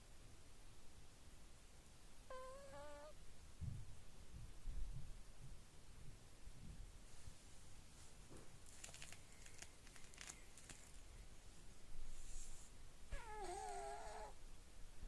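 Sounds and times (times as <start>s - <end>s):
cat snoring: 2.3s - 3.2s, 13.1s - 14.4s.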